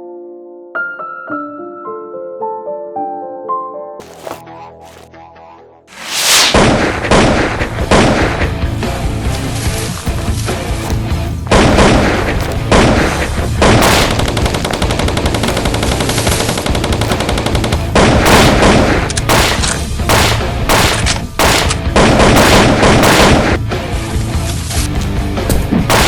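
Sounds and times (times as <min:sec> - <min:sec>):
automatic gunfire bursts: 0:11.5 - 0:23.6.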